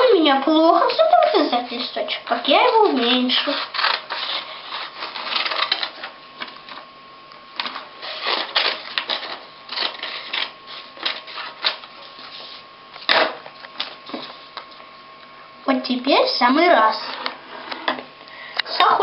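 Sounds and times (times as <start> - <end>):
faint steady hum: 0.0 - 19.0
paper rustling: 0.7 - 6.9, 7.6 - 14.8
scissors snipping paper: 2.7 - 6.1.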